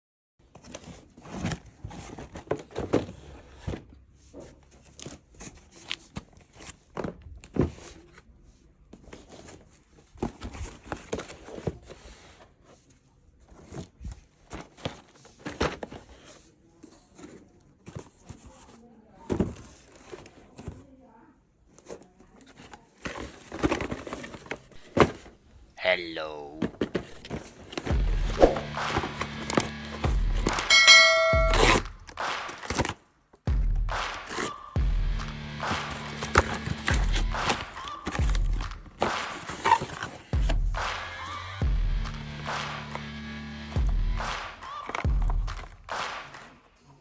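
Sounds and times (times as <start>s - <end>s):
plastic and cardboard crinkling: 0.4s - 21.0s, 21.6s - 25.7s, 35.6s - 40.9s.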